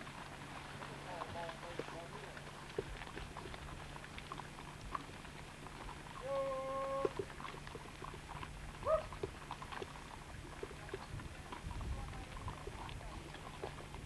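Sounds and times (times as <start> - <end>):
low steady hum: 0.0 - 14.0
rising animal call: 6.2 - 7.2, 8.8 - 9.1.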